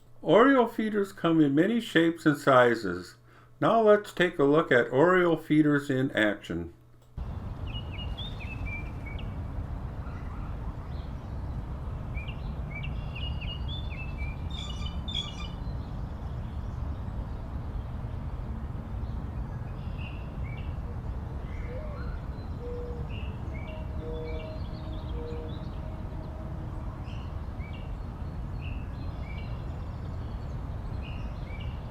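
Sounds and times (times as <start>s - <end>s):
low outdoor rumble: 7.1s - 31.9s
songbirds chirping: 7.2s - 31.9s.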